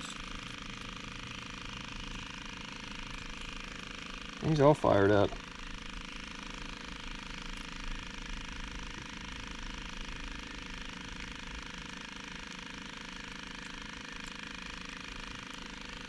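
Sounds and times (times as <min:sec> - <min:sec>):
fishing reel whirring: 0:00.0 - 0:16.0.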